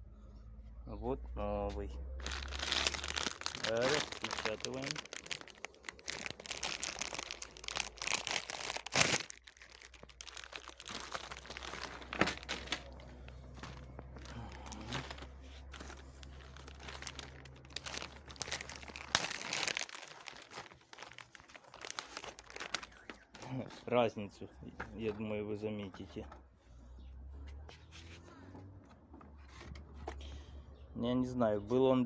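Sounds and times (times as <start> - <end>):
faint low hum: 0.0 - 20.6
plastic tearing: 2.2 - 23.5
plastic wrapping crinkling: 2.2 - 23.6.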